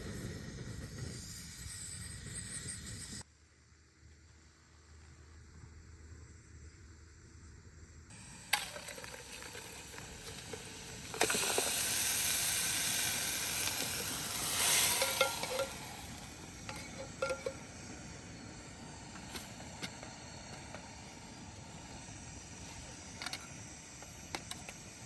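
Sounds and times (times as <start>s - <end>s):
food sizzling in a pan: 8.1s - 19.8s.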